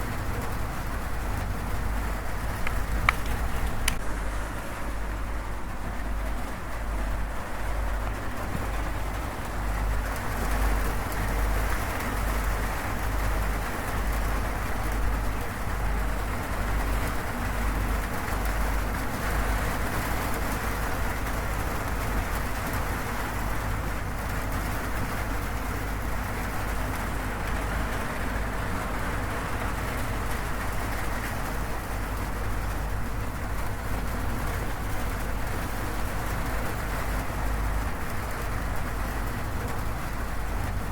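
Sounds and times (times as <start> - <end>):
rain on a metal roof: 0.0 - 40.9.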